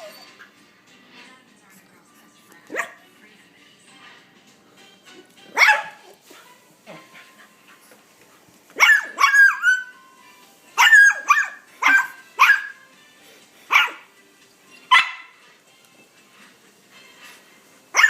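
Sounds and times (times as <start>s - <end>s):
puppy whining: 0.0s - 0.6s
puppy barking: 2.7s - 3.0s, 5.5s - 6.1s, 8.8s - 9.9s, 10.8s - 12.8s, 13.7s - 14.1s, 14.9s - 15.4s.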